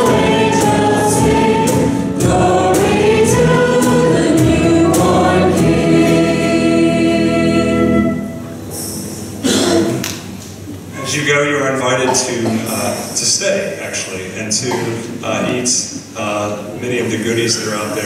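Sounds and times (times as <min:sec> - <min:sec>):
group singing a hymn: 0:00.0 - 0:08.6.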